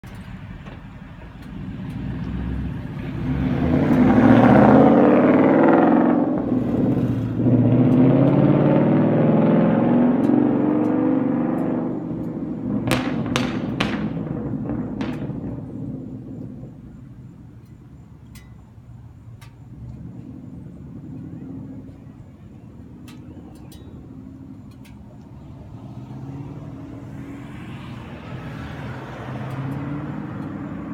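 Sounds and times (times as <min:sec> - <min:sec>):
loud car exhaust note: 0:01.4 - 0:18.0, 0:19.3 - 0:30.9.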